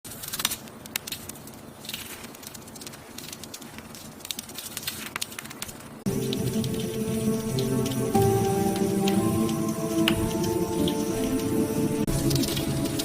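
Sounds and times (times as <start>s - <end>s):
light clicks and crackles: 0.1s - 13.0s
faint hiss: 5.8s - 13.0s
music: 6.1s - 13.0s.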